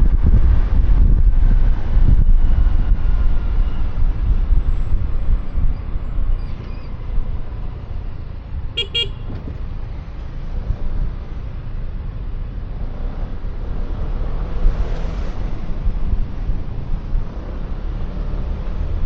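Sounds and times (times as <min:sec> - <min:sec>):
road traffic: 0:00.0 - 0:19.0
wind rumbling over microphone: 0:00.0 - 0:19.0
vehicle horn beeps: 0:08.8 - 0:09.4.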